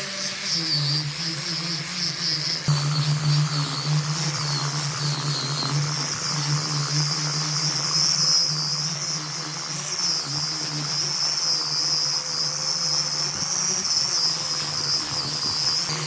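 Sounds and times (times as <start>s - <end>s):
high-pitched whine: 0.0s - 16.0s
machine humming: 0.0s - 16.0s.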